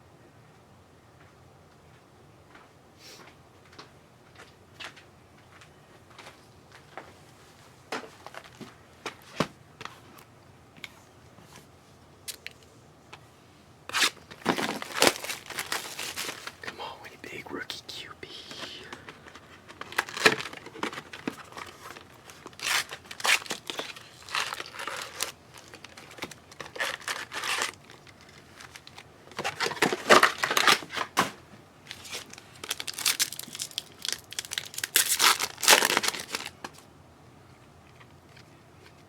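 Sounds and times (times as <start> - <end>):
card pack wrappers tearing and crinkling: 13.9 - 17.1, 18.0 - 31.2, 31.9 - 36.8.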